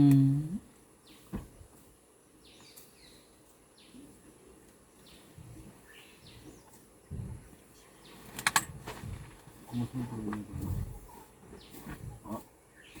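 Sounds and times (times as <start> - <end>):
low thump: 1.3 - 1.7
faint bird chirps: 2.4 - 8.4, 9.6 - 13.0.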